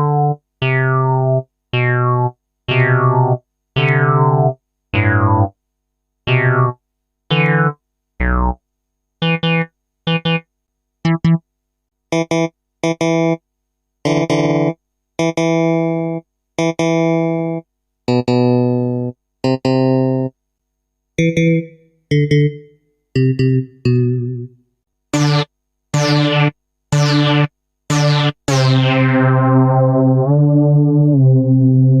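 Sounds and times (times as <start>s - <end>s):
synthesized keyboard tones: 0.0s - 5.6s, 6.3s - 8.6s, 9.2s - 11.4s.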